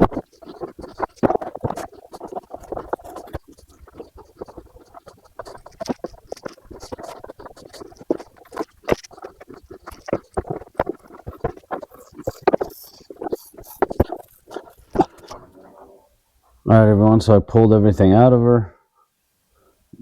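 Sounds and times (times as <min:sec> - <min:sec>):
scratchy rustles: 0:00.0 - 0:16.0.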